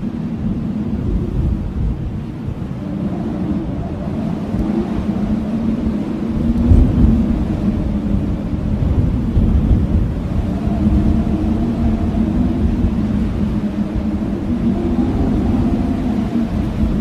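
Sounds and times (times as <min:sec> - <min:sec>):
blizzard wind howling in gusts: 0:00.0 - 0:17.0.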